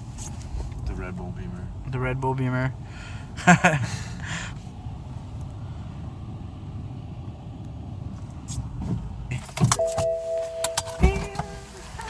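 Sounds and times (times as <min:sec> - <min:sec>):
car cabin engine and road rumble: 0:00.0 - 0:12.0
held multi-pitch tone: 0:09.8 - 0:11.6.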